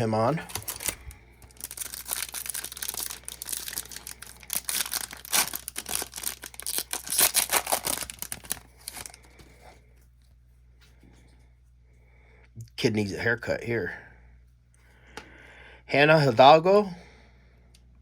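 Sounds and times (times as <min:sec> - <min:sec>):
wrapper crinkling: 0:00.0 - 0:09.3.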